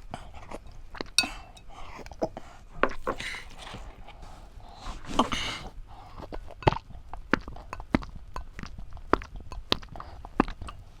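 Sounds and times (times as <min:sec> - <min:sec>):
wet mouth smacks and clicks: 0:06.2 - 0:10.8.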